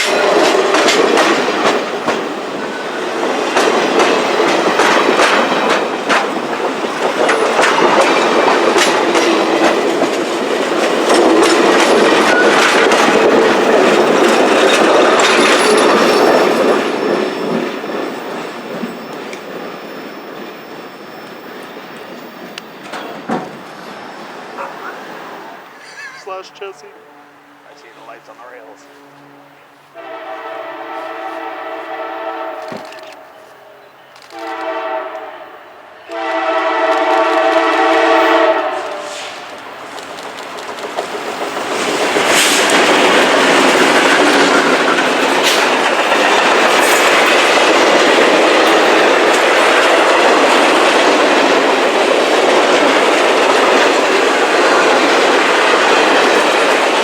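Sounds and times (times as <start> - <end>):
wheels clicking over rails: 0.0 - 23.9, 38.8 - 57.0
freight train rolling past: 0.0 - 57.0
locomotive air horn blasts: 28.8 - 33.5, 34.3 - 39.4.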